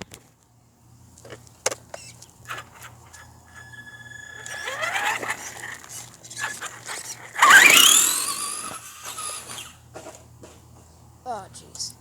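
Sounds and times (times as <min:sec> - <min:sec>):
rc car motor whining: 0:01.2 - 0:10.2.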